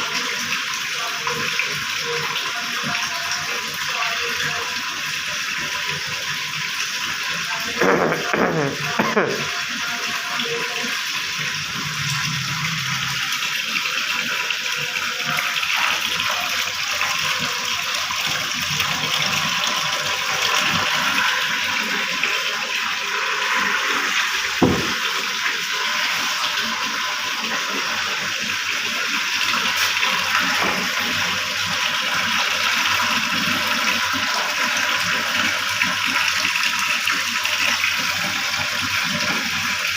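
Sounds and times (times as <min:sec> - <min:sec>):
water running: 0:00.0 - 0:39.9
knock: 0:24.6 - 0:25.0.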